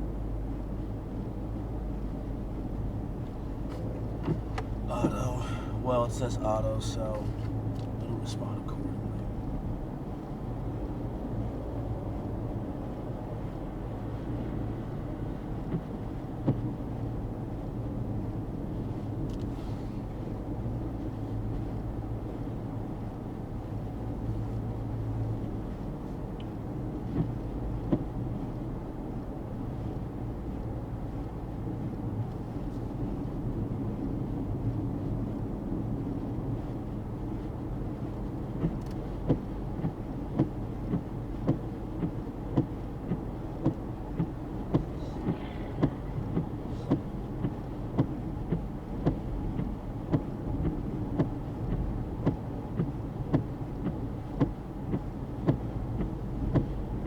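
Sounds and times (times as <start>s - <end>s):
car engine and tyre rumble: 0.0s - 57.0s.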